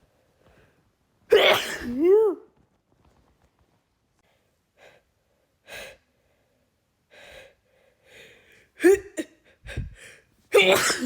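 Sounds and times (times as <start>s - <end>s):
woman sneezing: 1.3s - 2.4s, 10.5s - 11.0s
woman gasping breaths: 4.3s - 8.8s, 9.4s - 10.3s.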